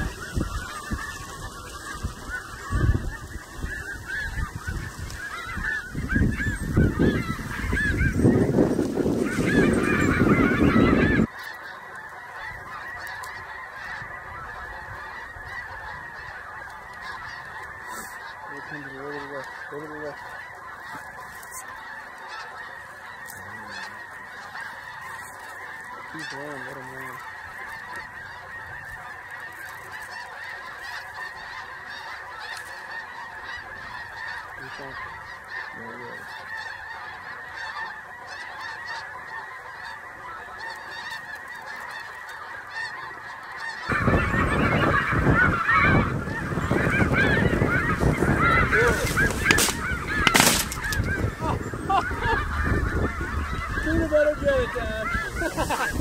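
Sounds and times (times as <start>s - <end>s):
flock of geese honking: 0.0s - 56.0s
sharp cracks: 48.9s - 51.2s.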